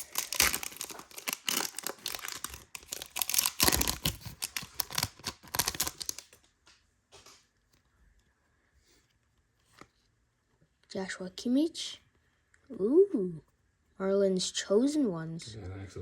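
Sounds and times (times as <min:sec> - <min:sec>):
wrapper tearing and crinkling: 0:00.0 - 0:06.4.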